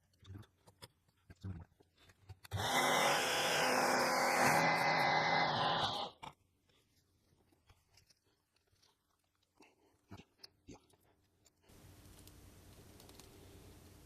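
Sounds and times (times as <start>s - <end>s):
faint steady hiss: 11.5s - 14.0s.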